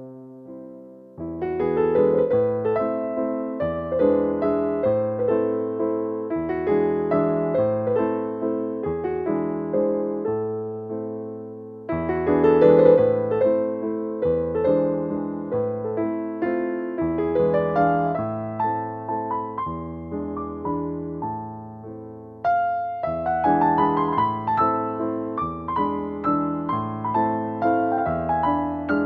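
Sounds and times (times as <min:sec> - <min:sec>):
gentle piano music: 0:00.0 - 0:29.0.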